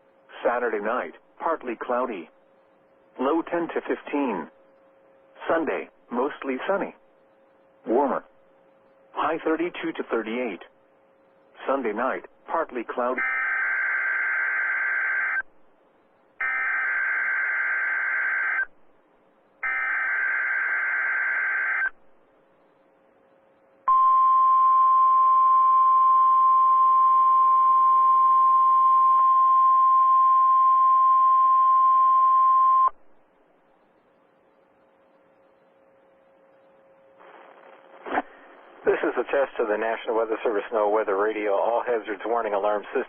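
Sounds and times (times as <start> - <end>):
steady warning alarm tone: 13.2 - 15.5, 16.4 - 18.7, 19.6 - 22.0.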